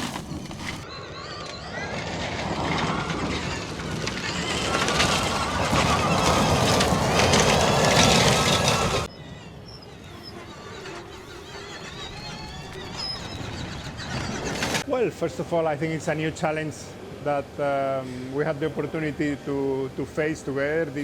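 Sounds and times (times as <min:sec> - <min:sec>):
tyre noise: 0:00.0 - 0:00.8, 0:02.4 - 0:09.1.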